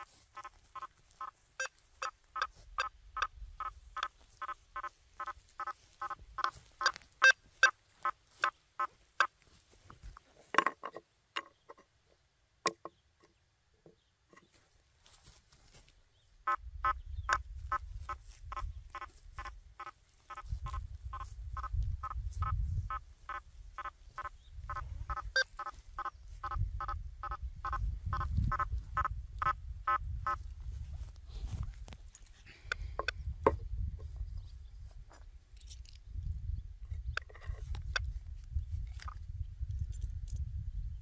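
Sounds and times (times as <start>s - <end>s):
metal detector beeping: 0.0s - 8.5s, 18.5s - 30.4s.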